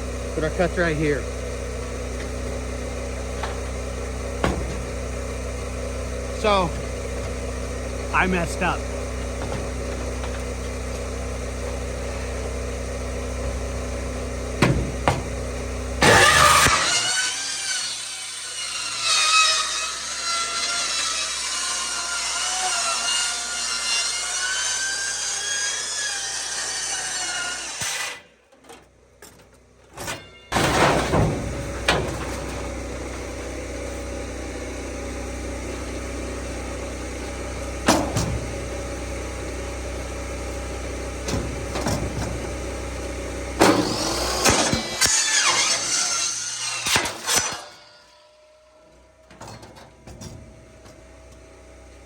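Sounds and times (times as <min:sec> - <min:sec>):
diesel engine running: 0:00.0 - 0:17.0, 0:28.8 - 0:46.0
power saw cutting pipe: 0:00.0 - 0:28.4, 0:30.2 - 0:51.9.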